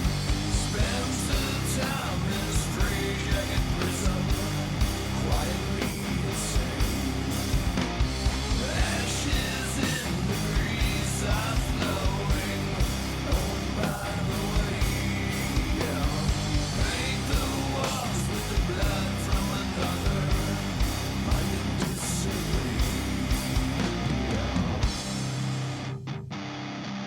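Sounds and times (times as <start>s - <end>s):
fast steady drum beat: 0.0s - 25.8s
distorted guitars: 0.0s - 27.0s
loud rock music: 0.0s - 27.0s
person singing: 0.6s - 6.9s, 8.6s - 23.2s.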